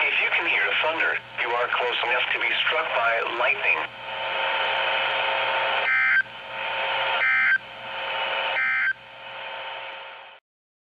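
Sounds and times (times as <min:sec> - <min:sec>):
radio hiss: 0:00.0 - 0:07.2.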